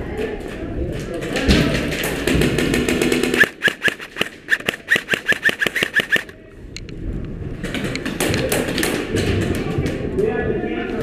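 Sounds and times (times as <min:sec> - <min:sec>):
airsoft gun rapid fire: 0:02.5 - 0:06.3.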